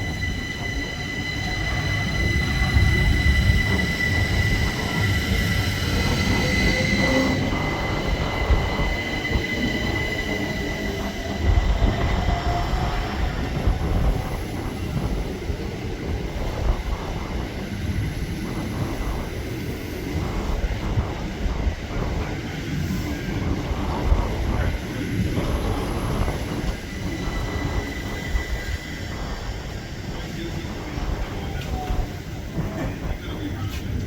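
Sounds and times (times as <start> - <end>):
high steady squeal: 0.0 - 15.6, 22.8 - 33.7
train wheels rumbling on rails: 0.0 - 34.0.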